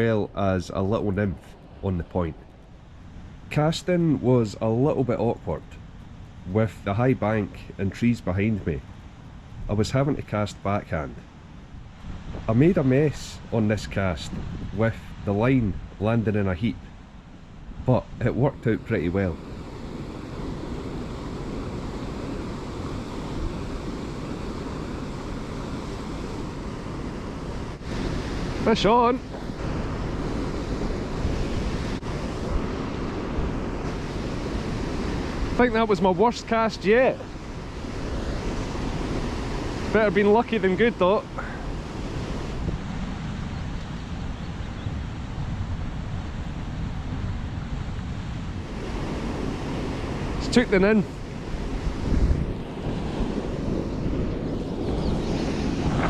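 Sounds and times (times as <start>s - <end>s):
wind buffeting microphone: 0.0s - 56.0s
waterfall and river rushing: 18.3s - 43.0s, 48.6s - 56.0s.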